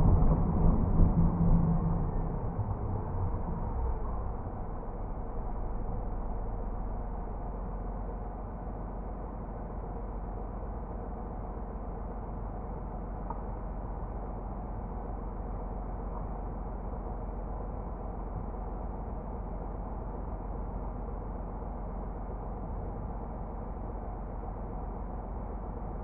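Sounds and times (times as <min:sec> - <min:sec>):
low rumble inside car cabin: 0:00.0 - 0:26.0.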